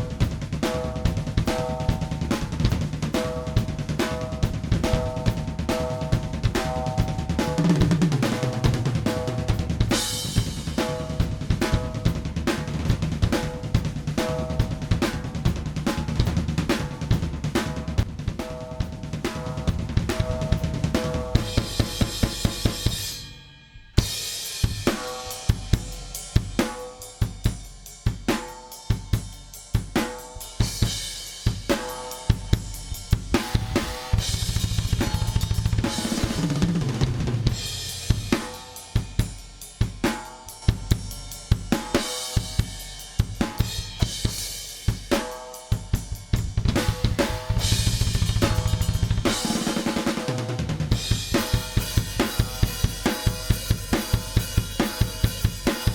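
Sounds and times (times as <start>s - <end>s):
drum kit playing a groove: 0.0s - 23.2s, 24.0s - 55.9s
bass line: 33.6s - 36.7s, 46.4s - 49.6s.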